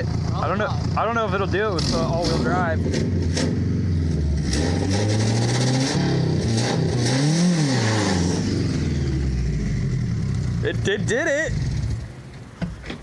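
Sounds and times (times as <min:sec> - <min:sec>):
car engine revving hard: 0:01.6 - 0:10.2.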